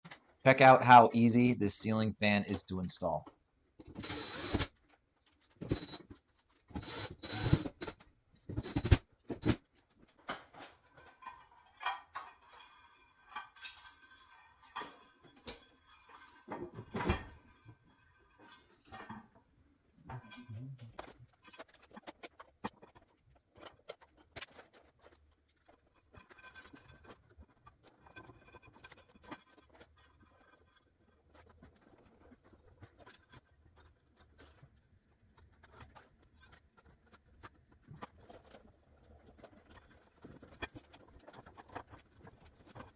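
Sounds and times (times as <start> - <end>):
hardware clicking and rattling: 20.0 - 42.9.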